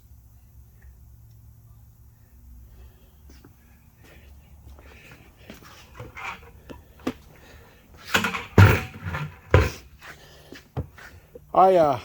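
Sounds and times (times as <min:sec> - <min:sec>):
metal clunks and knocks: 0:08.1 - 0:09.8.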